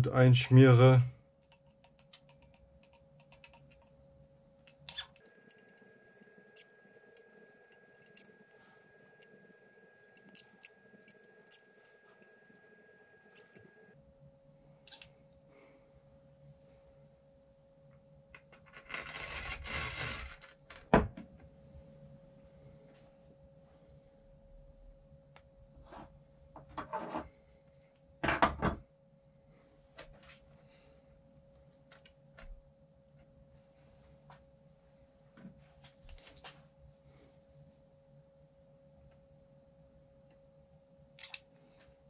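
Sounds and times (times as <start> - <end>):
small clicks and taps of parts: 1.4 - 4.0.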